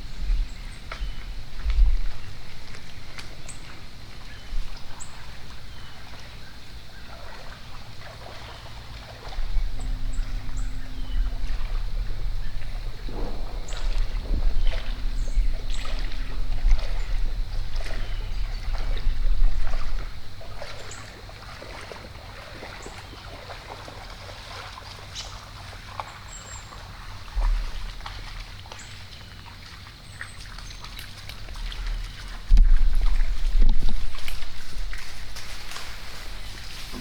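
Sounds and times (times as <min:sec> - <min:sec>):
faint ticks and rustles: 0:00.0 - 0:37.0
low rumble: 0:07.2 - 0:21.9
loud low thump: 0:09.4 - 0:20.3.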